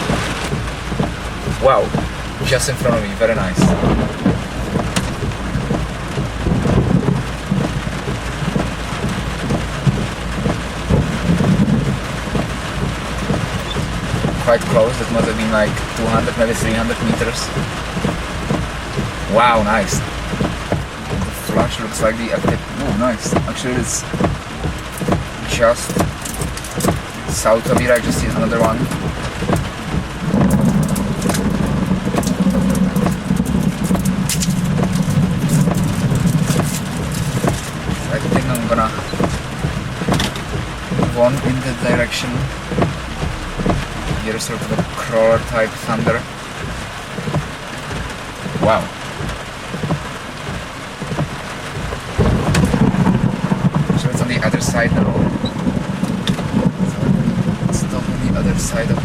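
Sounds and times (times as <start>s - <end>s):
thunder rumbling: 0.0s - 49.9s, 50.6s - 59.0s
heavy rain: 0.0s - 59.0s
drops clicking on car body: 22.4s - 41.5s.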